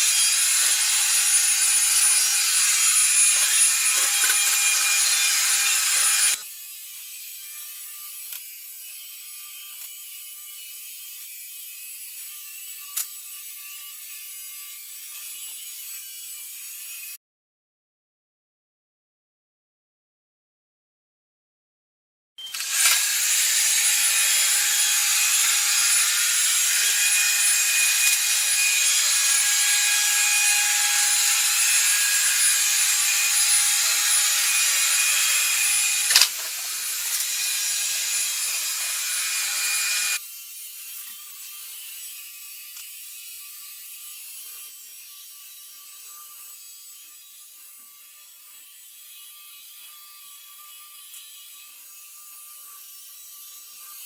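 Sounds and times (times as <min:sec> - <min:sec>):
robot vacuum motor whine: 0:22.4 - 0:40.2.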